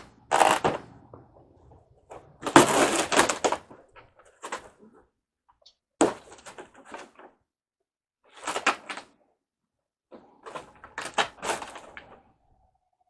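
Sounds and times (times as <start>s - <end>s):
screen door knocking and clattering: 0.6s - 2.8s.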